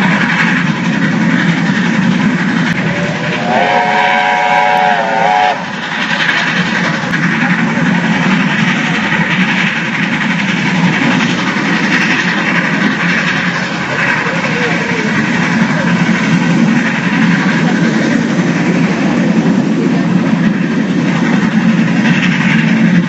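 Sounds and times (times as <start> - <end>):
train running: 0.0 - 23.0
steam locomotive whistle: 2.8 - 5.7.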